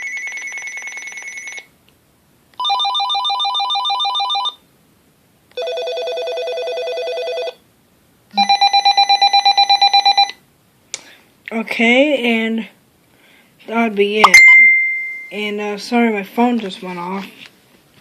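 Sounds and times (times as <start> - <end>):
electronic phone ringtone trilling: 0.0 - 1.7, 2.6 - 4.6, 5.6 - 7.6, 8.4 - 10.3.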